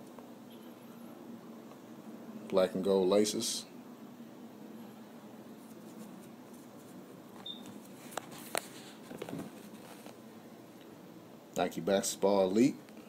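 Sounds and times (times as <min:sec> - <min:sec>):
quiet handling noise: 0:05.5 - 0:11.0.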